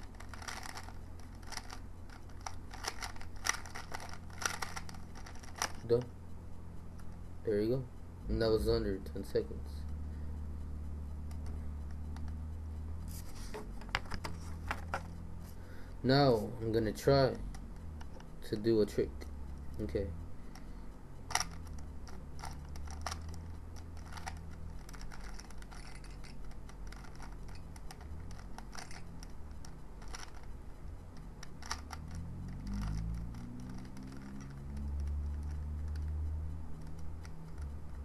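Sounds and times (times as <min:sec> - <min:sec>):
low steady hum: 0:00.0 - 0:38.0
plastic clicks of puzzle cube: 0:00.1 - 0:05.9, 0:21.3 - 0:30.5, 0:31.4 - 0:36.2.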